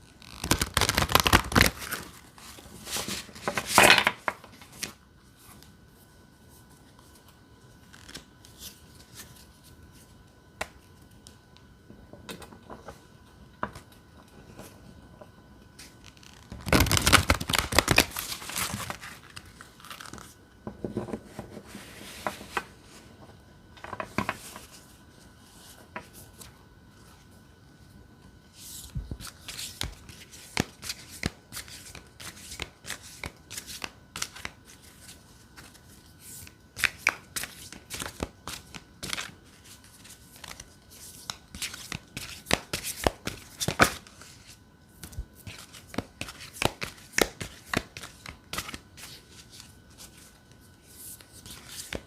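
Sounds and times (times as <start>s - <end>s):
cards riffling and sliding: 28.7s - 52.0s.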